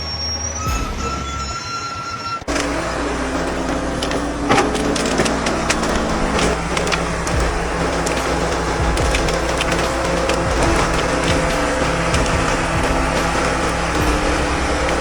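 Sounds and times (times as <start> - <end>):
steady high tones: 0.0 - 4.4
motorcycle engine running: 2.5 - 15.0.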